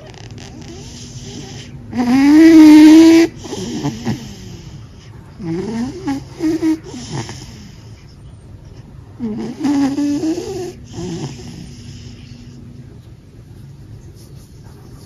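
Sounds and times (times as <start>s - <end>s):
cat snoring: 0.0s - 8.1s, 9.2s - 12.6s.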